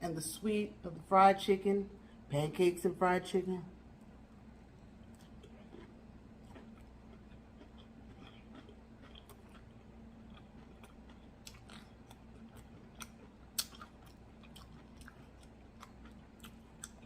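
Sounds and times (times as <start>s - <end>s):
faint low hum: 0.0s - 17.0s
chewing and crunching food: 4.9s - 17.0s.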